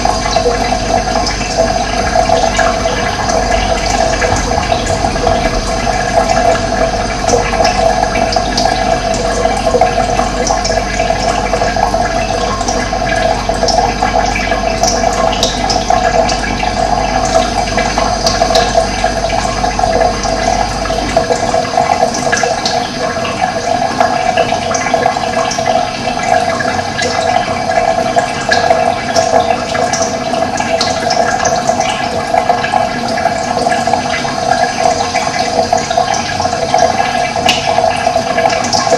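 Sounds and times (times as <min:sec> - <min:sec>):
low hum: 0:00.0 - 0:23.8
running water rushing: 0:00.0 - 0:38.9.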